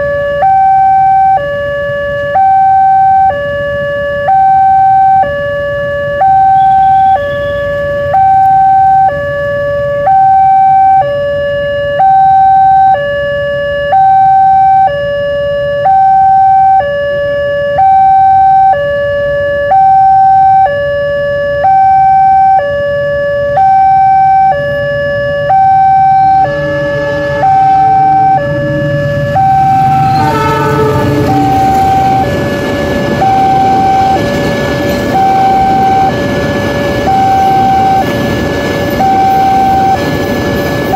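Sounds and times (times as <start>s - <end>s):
level crossing two-tone warning siren: 0.0s - 40.9s
train horn: 6.1s - 8.0s, 25.7s - 36.3s
loud rushing noise: 25.8s - 40.9s.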